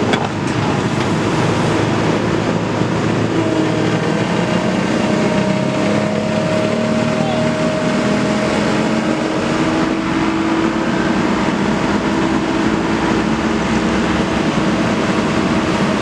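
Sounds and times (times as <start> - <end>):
excavator diesel engine running: 0.0 - 8.8.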